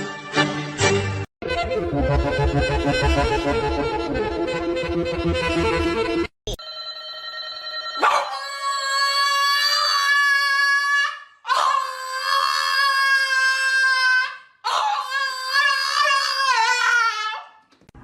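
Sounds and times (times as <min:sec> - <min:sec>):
background music: 0:00.0 - 0:06.3
dog howling: 0:08.0 - 0:10.6, 0:11.5 - 0:12.4.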